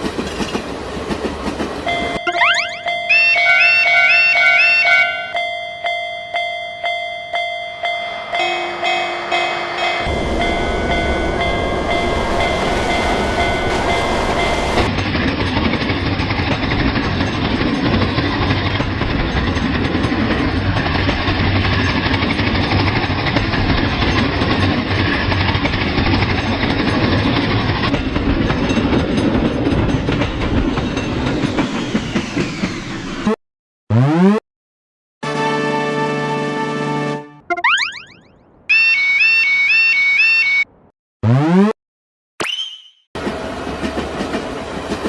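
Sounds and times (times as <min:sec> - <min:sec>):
train wheels rumbling and rattling: 0:00.0 - 0:02.2, 0:09.7 - 0:33.2, 0:43.2 - 0:45.0.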